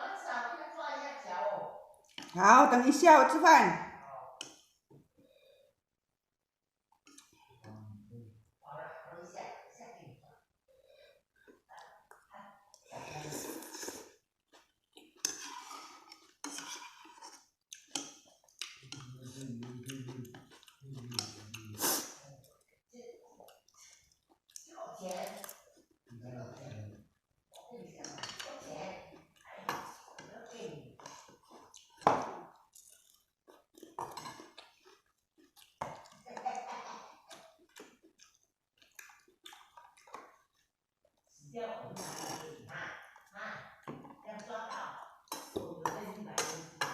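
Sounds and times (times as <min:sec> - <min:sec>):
chewing and slurping: 0:02.0 - 0:02.4, 0:06.9 - 0:07.7, 0:10.8 - 0:41.4, 0:42.0 - 0:44.2.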